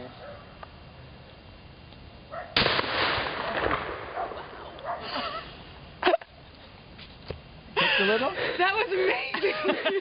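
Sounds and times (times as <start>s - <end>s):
shotgun shot: 2.6s - 4.7s.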